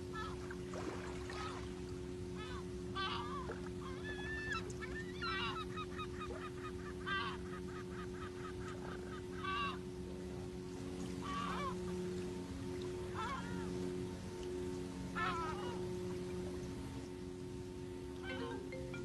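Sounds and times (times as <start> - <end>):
steady low hum: 0.0 - 19.0
birds calling: 2.3 - 10.0, 11.0 - 13.9, 14.8 - 17.2, 18.2 - 19.0.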